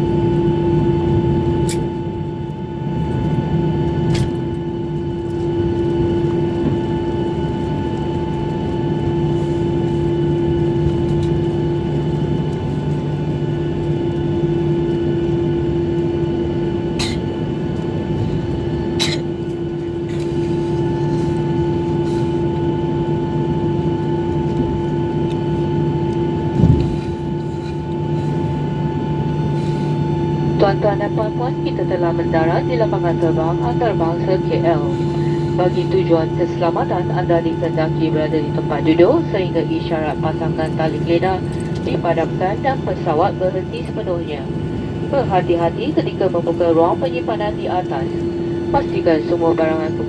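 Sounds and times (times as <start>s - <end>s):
aircraft engines idling: 0.0s - 50.0s
low thump: 26.6s - 27.0s.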